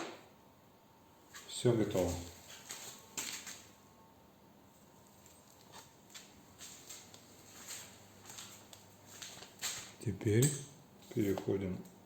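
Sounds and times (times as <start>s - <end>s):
metal tools clicking and tapping: 10.2s - 12.0s.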